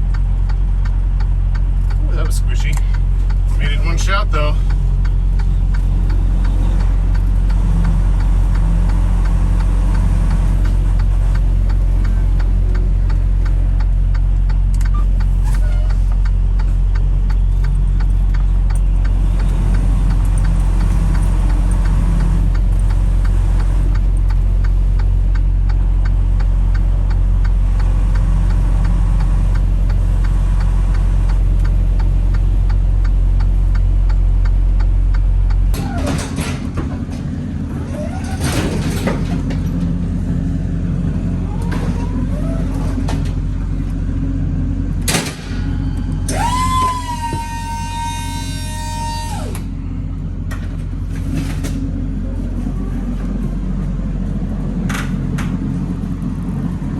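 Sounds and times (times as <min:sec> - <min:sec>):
vehicle engine and road noise: 0:00.0 - 0:56.9
fast even ticking: 0:00.1 - 0:14.9.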